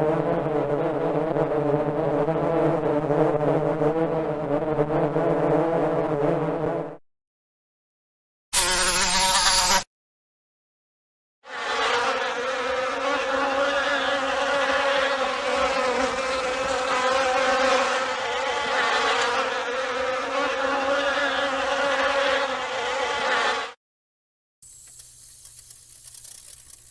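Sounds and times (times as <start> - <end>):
bee buzzing: 24.6 - 26.9.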